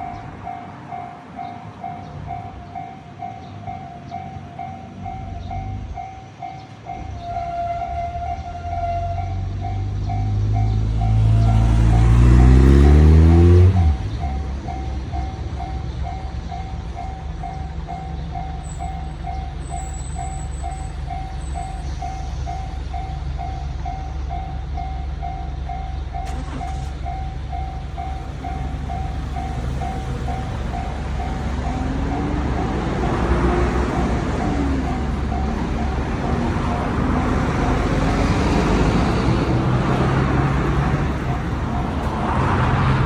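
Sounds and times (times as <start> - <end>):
level-crossing warning bell ringing: 0.0 - 42.6
train accelerating past: 4.0 - 43.0
rising engine tone: 8.2 - 15.6.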